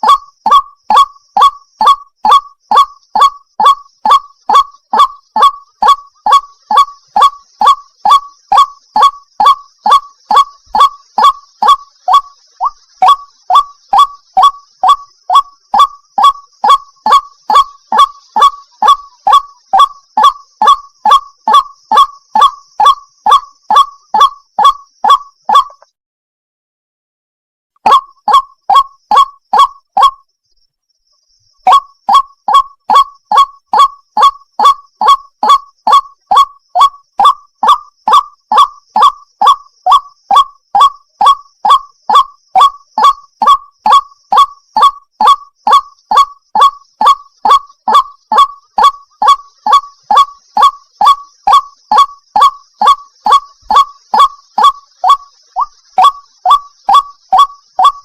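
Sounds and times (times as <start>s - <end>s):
waterhen calling: 0.0s - 25.8s, 27.8s - 30.2s, 31.7s - 58.0s.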